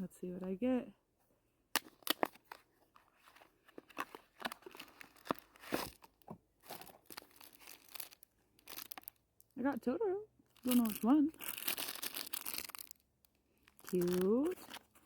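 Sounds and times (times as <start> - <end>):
packaging torn and crinkled: 1.8 - 2.6, 3.9 - 9.5, 10.5 - 15.0.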